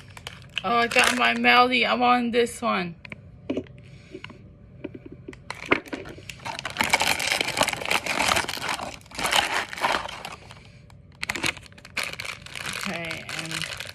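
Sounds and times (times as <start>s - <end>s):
packaging crinkling and crackling: 0.0s - 1.5s, 5.4s - 13.9s.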